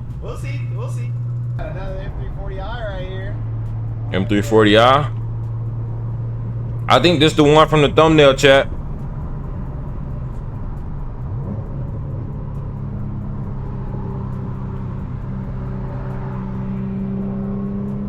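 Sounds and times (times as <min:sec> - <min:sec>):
car engine drone: 0:00.0 - 0:18.0
road noise: 0:00.0 - 0:18.0.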